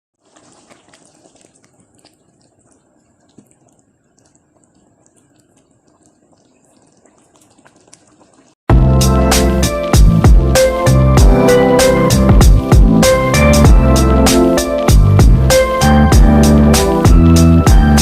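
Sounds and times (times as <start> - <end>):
faint small clicks and ticks: 0.7 - 8.6.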